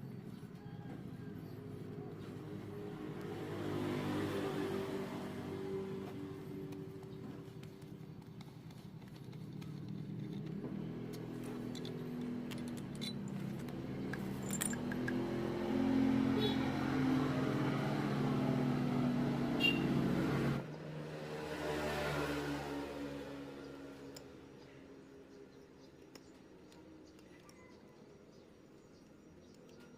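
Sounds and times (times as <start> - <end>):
engine humming: 1.7 - 20.8.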